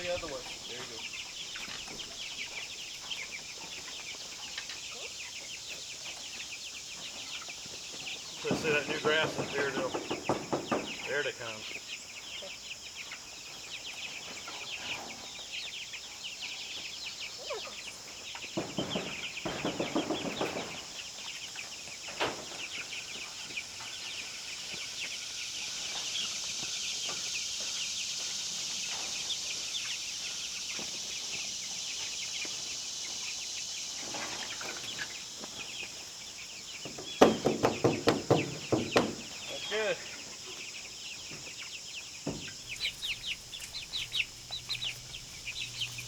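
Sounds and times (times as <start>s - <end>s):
steady high hiss: 0.0s - 10.2s, 20.6s - 37.2s, 38.5s - 46.0s
chickens clucking and peeping: 0.0s - 46.0s
rustling: 42.4s - 46.0s.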